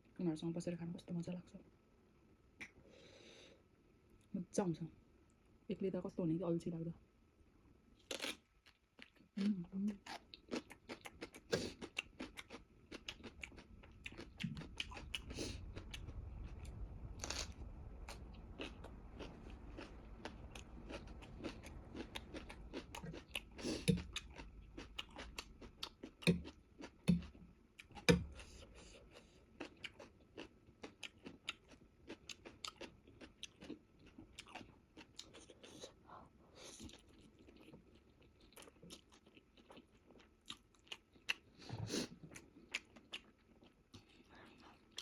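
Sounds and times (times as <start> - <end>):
chewing and eating noodles: 8.1 - 45.0.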